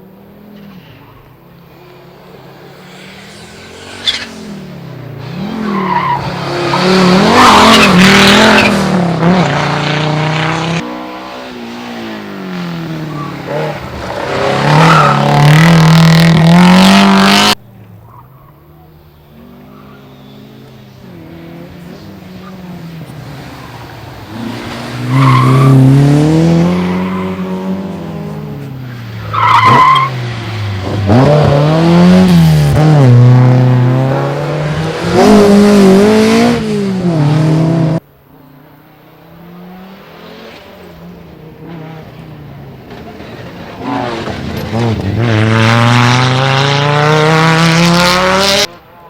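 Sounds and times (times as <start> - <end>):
rally car engines passing: 0.0 - 49.0
tyre squeal: 2.9 - 8.9, 21.9 - 31.6.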